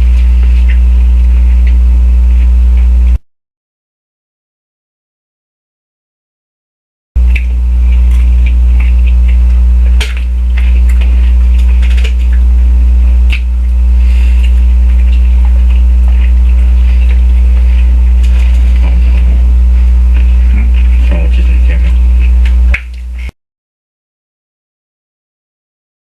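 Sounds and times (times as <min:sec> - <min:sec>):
loud low electrical hum: 0:00.0 - 0:03.2, 0:07.2 - 0:23.4.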